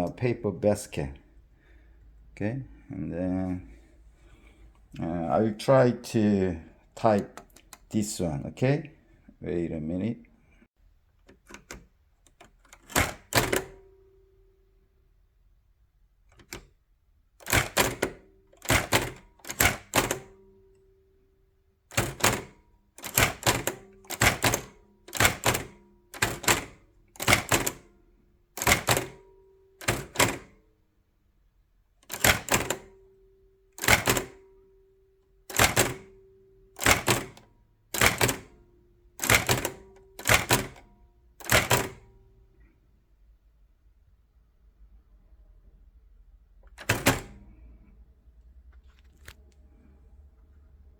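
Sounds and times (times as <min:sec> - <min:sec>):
typewriter keystrokes clacking: 0:11.3 - 0:13.8, 0:16.3 - 0:16.7, 0:17.4 - 0:20.4, 0:21.9 - 0:27.9, 0:28.6 - 0:29.2, 0:29.8 - 0:30.6, 0:32.0 - 0:33.0, 0:33.8 - 0:34.4, 0:35.5 - 0:36.2, 0:36.8 - 0:38.6, 0:39.2 - 0:40.8, 0:41.4 - 0:42.0, 0:46.7 - 0:47.4.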